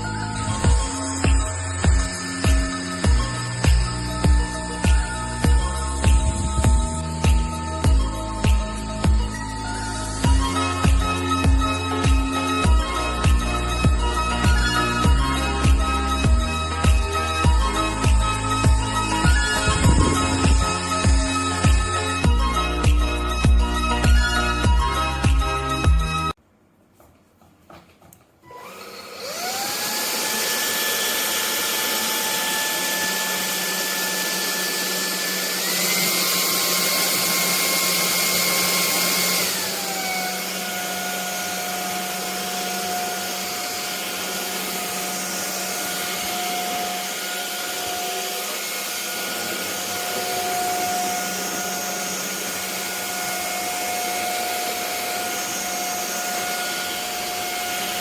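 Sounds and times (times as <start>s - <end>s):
vacuum motor whining: 0.0s - 7.1s, 18.1s - 21.9s, 28.4s - 58.0s.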